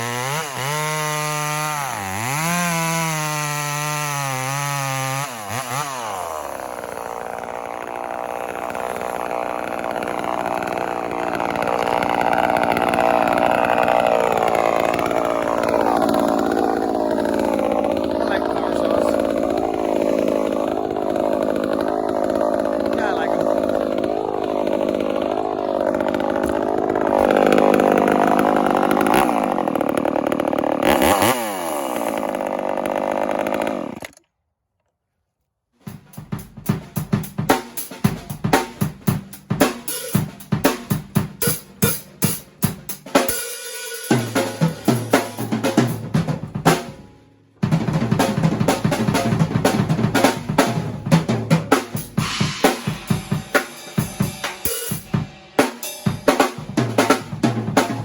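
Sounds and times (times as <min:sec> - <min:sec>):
chainsaw running under load: 0:00.0 - 0:34.3, 0:37.8 - 0:58.0
drum-kit music with steady beat: 0:35.9 - 0:47.0, 0:47.6 - 0:58.0.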